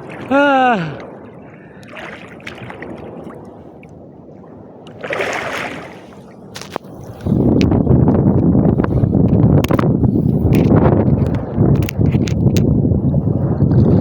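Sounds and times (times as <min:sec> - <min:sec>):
seawater sloshing and splashing: 0:00.0 - 0:07.5.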